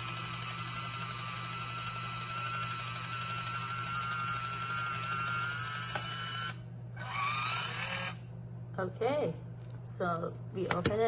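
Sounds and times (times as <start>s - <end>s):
electric can opener whining: 0.0s - 8.2s.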